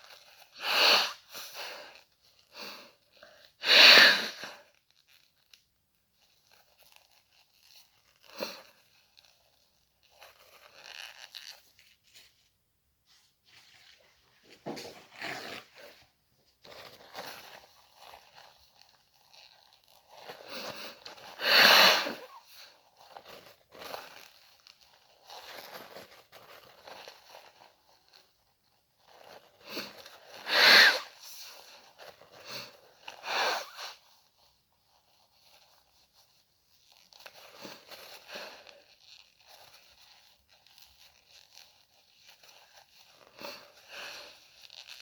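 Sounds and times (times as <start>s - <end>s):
tissue rustling: 0.0s - 0.6s, 4.3s - 45.0s
person blowing nose: 0.4s - 4.6s, 19.2s - 22.7s, 29.6s - 31.8s, 32.4s - 34.0s.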